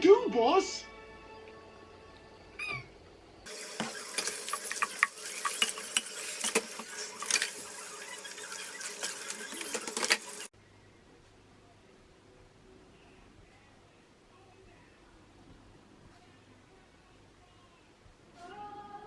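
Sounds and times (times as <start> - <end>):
dishes clinking: 3.5 - 10.5
tap water running into sink: 3.5 - 10.5.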